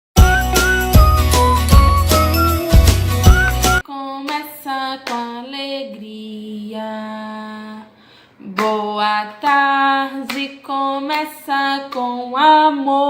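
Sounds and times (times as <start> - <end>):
loud instrumental jingle: 0.2 - 3.8
woman singing: 3.8 - 13.0.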